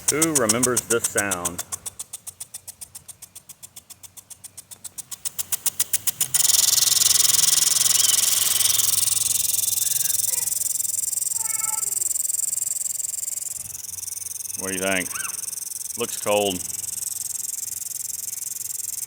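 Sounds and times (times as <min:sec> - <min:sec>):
sprinkler ticking: 0:00.0 - 0:19.0
water spraying hiss: 0:04.8 - 0:19.0.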